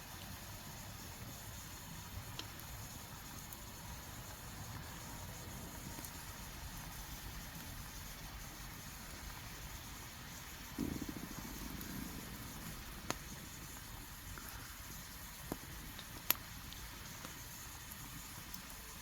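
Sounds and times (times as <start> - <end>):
campfire burning: 0.0 - 19.0
fire crackling pops: 0.1 - 19.0
low fluttering rumble: 10.8 - 14.2.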